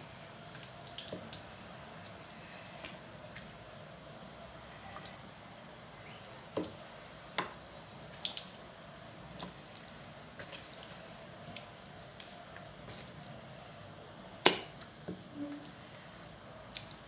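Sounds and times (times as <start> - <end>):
wet squelches of chicken pieces: 0.6 - 2.5.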